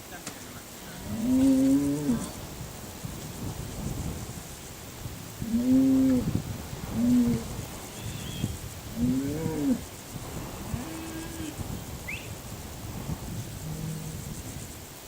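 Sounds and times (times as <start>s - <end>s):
bird chirps: 8.0s - 8.6s.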